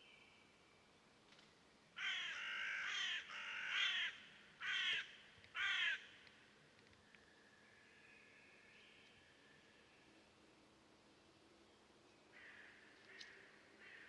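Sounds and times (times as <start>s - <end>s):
crow cawing: 2.0s - 6.1s, 12.3s - 14.0s.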